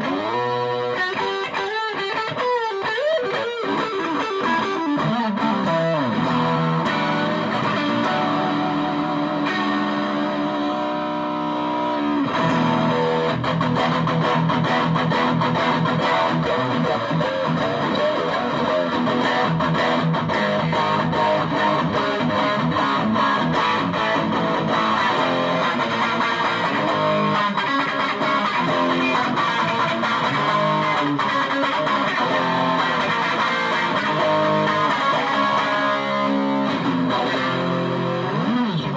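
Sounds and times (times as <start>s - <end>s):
distorted electric guitar: 0.0s - 38.9s.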